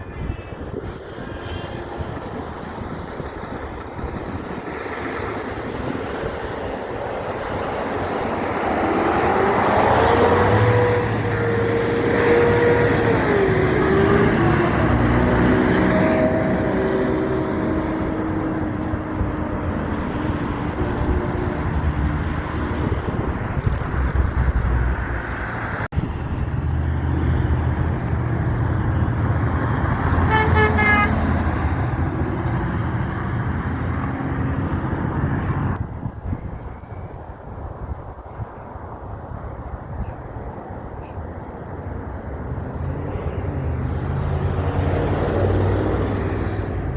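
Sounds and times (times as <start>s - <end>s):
heavy trucks driving past: 0.0s - 46.9s
truck horn blast: 0.1s - 2.9s, 9.6s - 19.8s, 29.9s - 31.9s.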